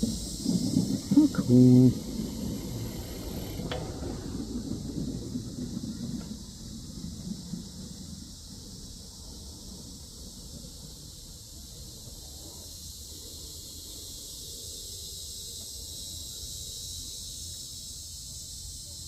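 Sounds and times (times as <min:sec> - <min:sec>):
wind rumble on microphone: 0:00.0 - 0:14.2
high-pitched insect chorus: 0:00.0 - 0:19.0.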